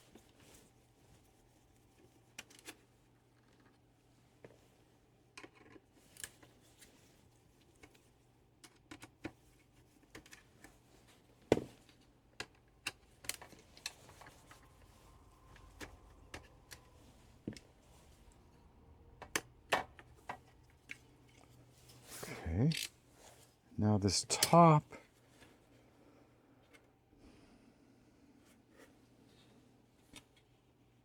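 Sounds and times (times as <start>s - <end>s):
small parts and tools clicking: 22.7s - 22.9s.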